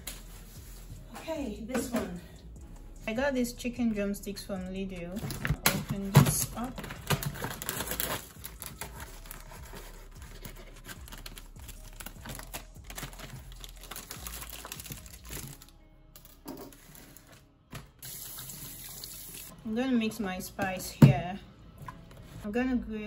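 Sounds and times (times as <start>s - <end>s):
plastic packaging crinkling: 5.2s - 17.4s.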